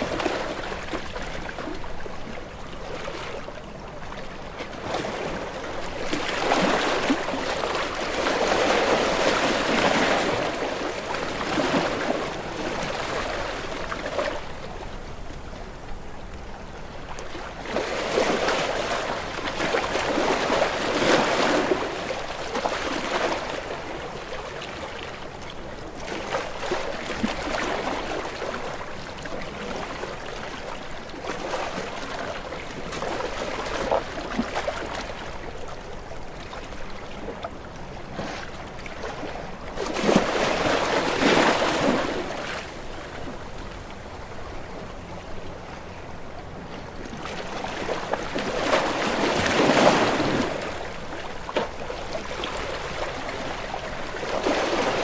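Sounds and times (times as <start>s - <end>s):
ocean waves washing: 25.8s - 55.0s.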